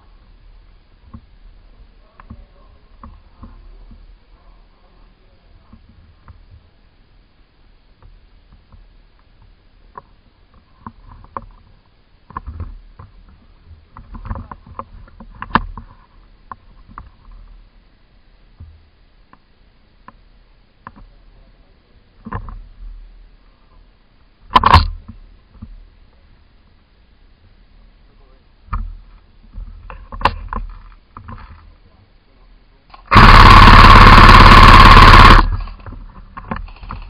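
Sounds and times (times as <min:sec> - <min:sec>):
sharp clicks and knocks: 0:24.5 - 0:25.7, 0:32.9 - 0:37.0.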